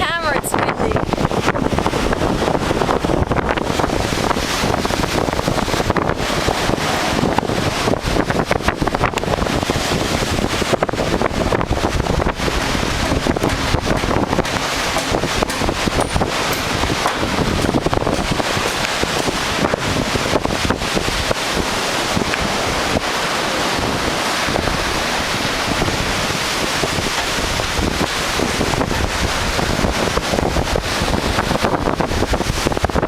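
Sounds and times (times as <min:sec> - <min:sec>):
gusty wind buffeting microphone: 0:00.0 - 0:33.0.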